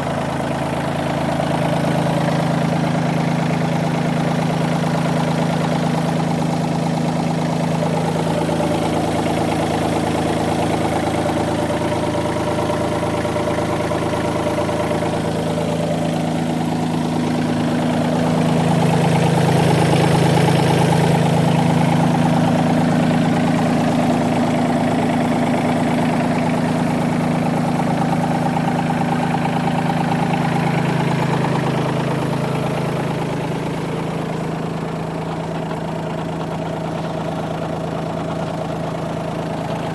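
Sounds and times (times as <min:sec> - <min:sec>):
loader engine running: 0:00.0 - 0:39.9.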